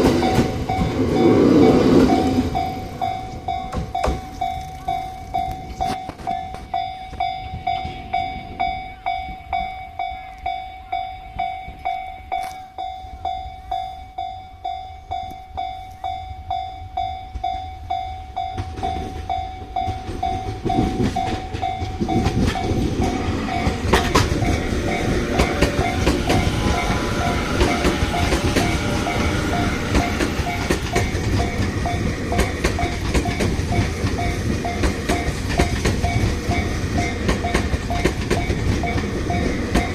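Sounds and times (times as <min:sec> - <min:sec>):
wheels clattering over rail joints: 0:00.0 - 0:08.2, 0:18.4 - 0:39.9
level crossing bell ringing: 0:00.0 - 0:39.9
train rumbling: 0:00.0 - 0:39.9.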